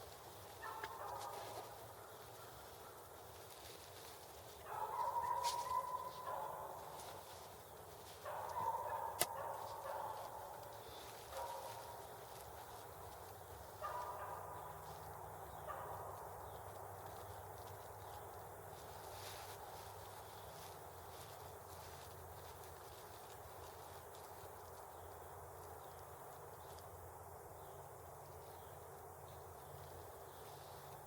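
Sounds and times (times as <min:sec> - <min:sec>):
turkey gobbling: 0:00.6 - 0:01.6, 0:04.7 - 0:06.8, 0:13.8 - 0:14.7.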